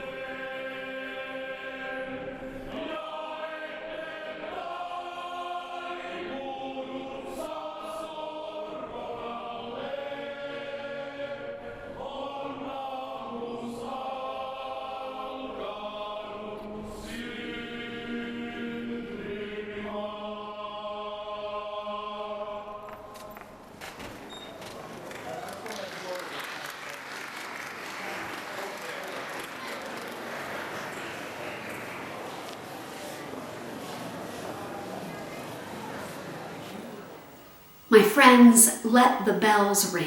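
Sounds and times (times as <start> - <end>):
choir singing sacred piece: 0.0 - 22.7, 37.9 - 40.0.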